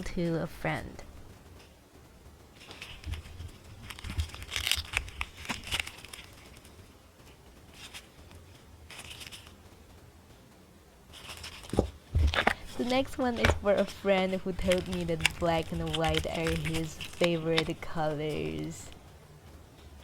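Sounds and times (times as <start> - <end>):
silicone mold peeling rustles: 2.5 - 9.7, 11.0 - 19.0.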